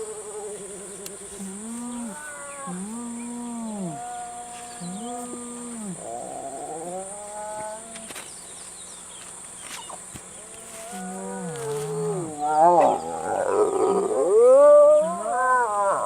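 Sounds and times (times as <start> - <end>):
hyena calling: 0.2 - 8.1.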